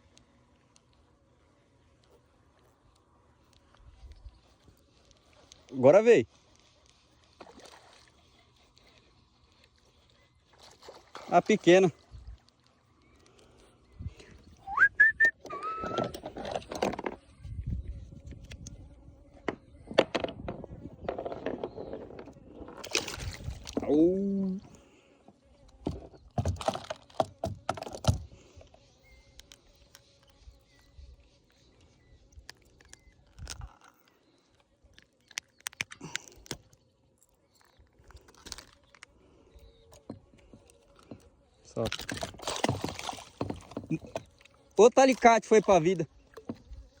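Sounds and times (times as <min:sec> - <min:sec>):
short whistled notes: 0:14.6 - 0:16.2
fishing gear clicking and knocking: 0:15.4 - 0:17.2, 0:19.9 - 0:23.9, 0:25.9 - 0:28.3, 0:35.0 - 0:36.7, 0:39.9 - 0:45.7.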